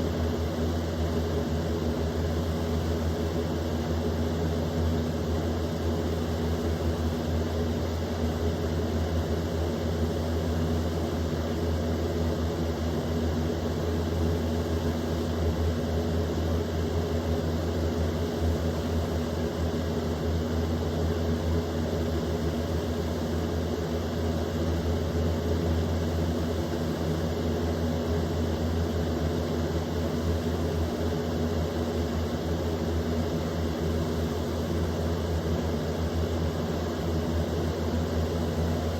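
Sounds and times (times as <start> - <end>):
box fan running: 0.0 - 38.9.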